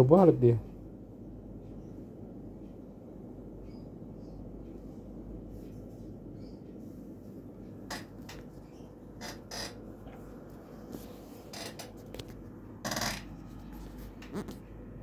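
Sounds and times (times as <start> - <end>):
low steady hum: 0.0 - 15.0
handling rustles and rubs: 9.9 - 12.6, 13.2 - 14.7.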